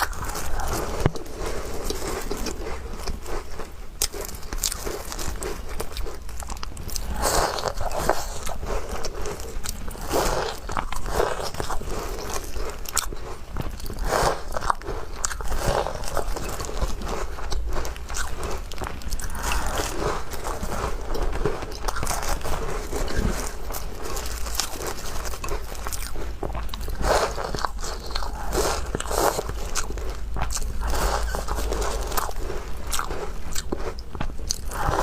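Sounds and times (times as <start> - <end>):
crunching cookies: 0.0 - 35.0.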